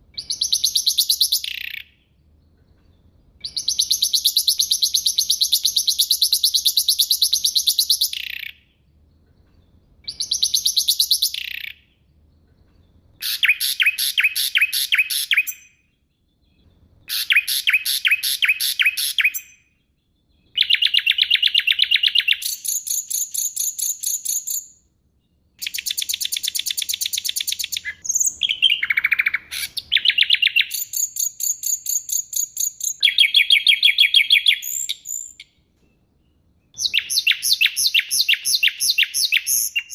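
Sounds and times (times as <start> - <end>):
songbird singing: 0.0 - 39.9.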